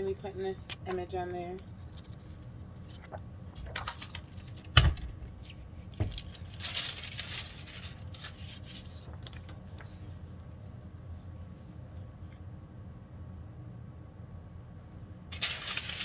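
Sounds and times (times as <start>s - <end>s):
paper rustling: 0.7s - 10.5s, 15.3s - 16.0s.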